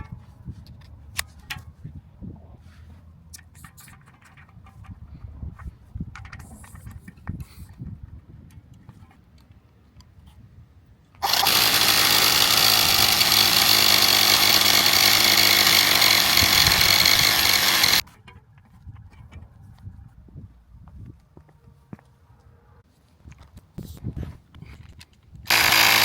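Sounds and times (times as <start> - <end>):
inflator compressor running: 11.2 - 18.0, 25.5 - 26.0.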